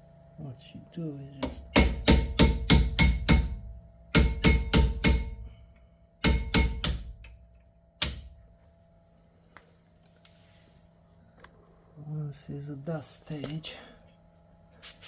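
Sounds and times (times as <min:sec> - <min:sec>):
hammer tapping metal punch: 0:01.4 - 0:05.5, 0:06.2 - 0:08.4.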